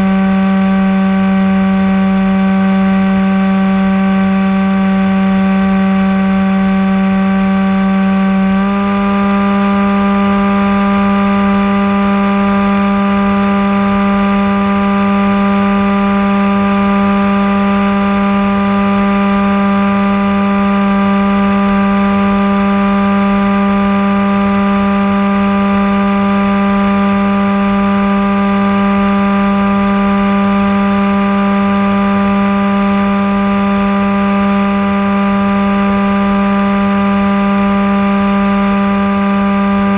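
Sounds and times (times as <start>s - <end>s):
model aircraft motor whine: 0.0s - 39.9s
airflow rushing: 39.6s - 39.9s.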